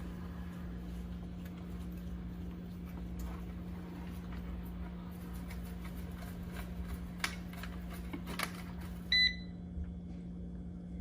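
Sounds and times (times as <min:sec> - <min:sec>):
short beep: 0:09.1 - 0:09.5.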